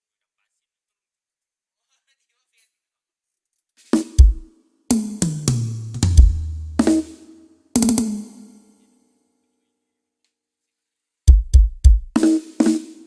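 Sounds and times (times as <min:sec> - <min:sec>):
snare drum hits: 0:03.9 - 0:07.2
bass drum hits: 0:05.4 - 0:07.1.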